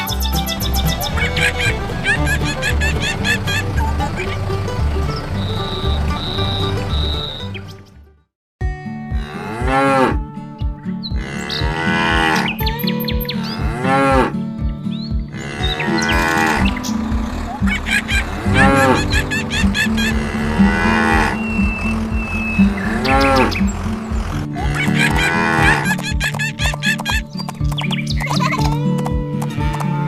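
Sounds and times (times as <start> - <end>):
background music with low beat: 0.0 - 30.0
cartoon cows mooing: 9.2 - 10.2, 11.2 - 12.6, 13.4 - 14.4, 15.4 - 26.1.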